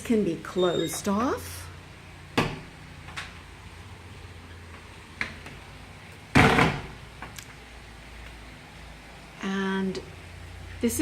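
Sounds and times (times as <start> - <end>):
doors shutting with clatter: 6.3 - 7.4.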